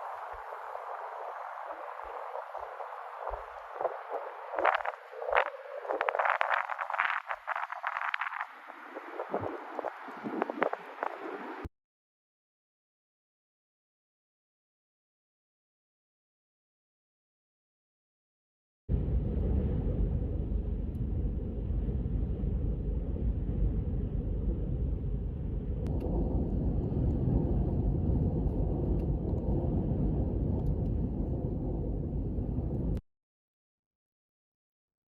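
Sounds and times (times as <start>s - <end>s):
wind buffeting microphone: 0.0s - 11.7s, 18.9s - 33.0s
click: 30.6s - 31.0s.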